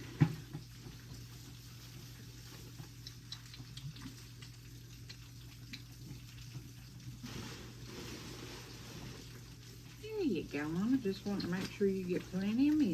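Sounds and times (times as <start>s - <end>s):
goat kid suckling: 0.0s - 10.3s.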